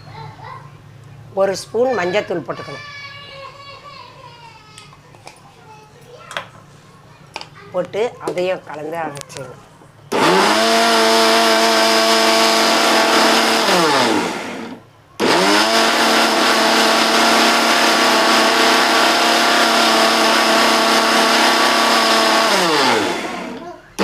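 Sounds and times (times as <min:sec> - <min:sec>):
mixer grinder motor grinding: 0:10.1 - 0:24.0.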